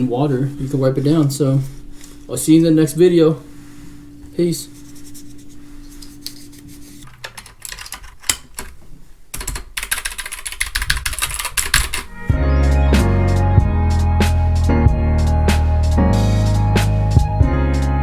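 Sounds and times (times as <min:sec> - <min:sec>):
computer keyboard typing: 0:07.0 - 0:08.7, 0:09.4 - 0:12.1
music with heavy bass: 0:12.2 - 0:18.0.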